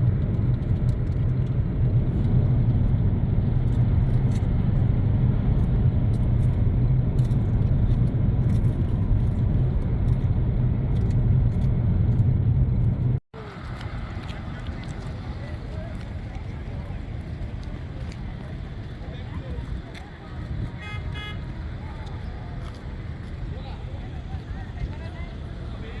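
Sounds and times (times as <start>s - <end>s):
car engine rumble: 0.0s - 26.0s
road noise: 0.0s - 26.0s.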